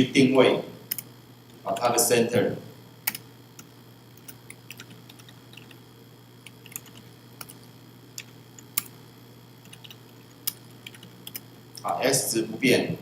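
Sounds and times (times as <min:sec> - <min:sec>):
low steady hum: 0:00.0 - 0:13.0
keystrokes on computer keyboard: 0:04.2 - 0:05.8, 0:06.4 - 0:07.6, 0:09.6 - 0:11.4.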